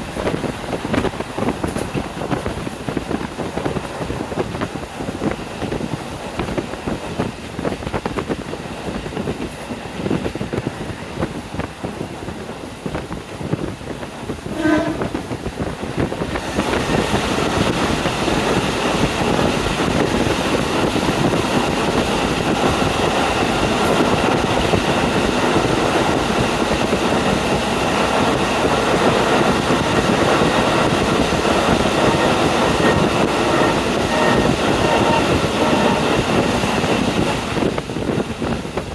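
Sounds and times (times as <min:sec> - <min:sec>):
rushing wind: 0:00.0 - 0:38.9
wheel clatter on rails: 0:00.0 - 0:38.9
train horn note: 0:14.5 - 0:15.2, 0:32.0 - 0:36.9.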